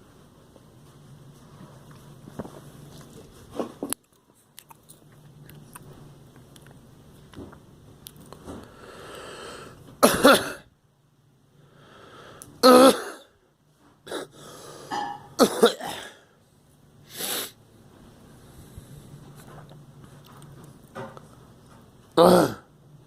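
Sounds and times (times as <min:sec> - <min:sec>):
girl breathing: 0:08.6 - 0:09.8, 0:11.6 - 0:12.4
girl coughing: 0:10.0 - 0:10.6, 0:12.6 - 0:13.3, 0:14.9 - 0:16.2.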